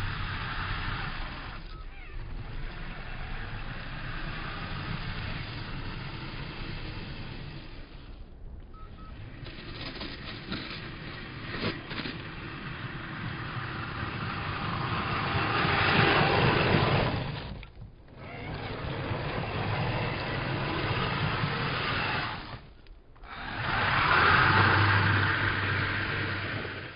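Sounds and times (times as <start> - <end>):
toy snow plow motor and tracks: 0.0 - 26.9.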